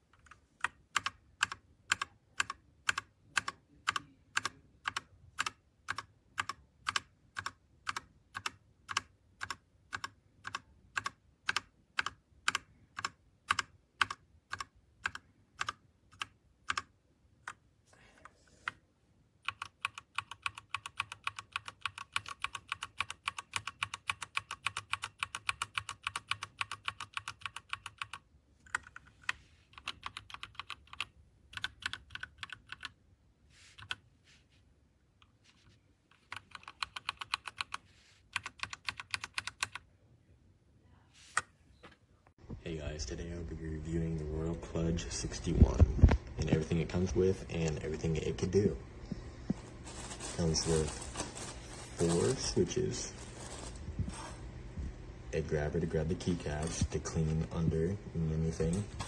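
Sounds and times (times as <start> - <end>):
mechanical keyboard typing: 0.2 - 16.9, 19.5 - 33.0, 36.2 - 39.9.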